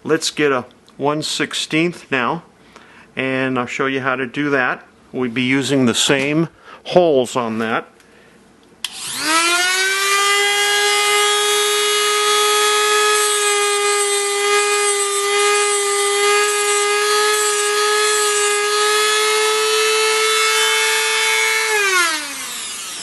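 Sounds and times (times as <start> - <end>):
grinder motor high whine: 8.8 - 23.0
wheel grinding electrode: 8.8 - 23.0.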